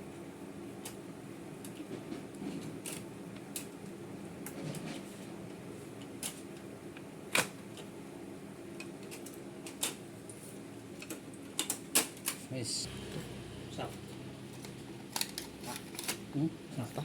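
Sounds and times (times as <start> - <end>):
steady low hum: 12.7 - 17.0.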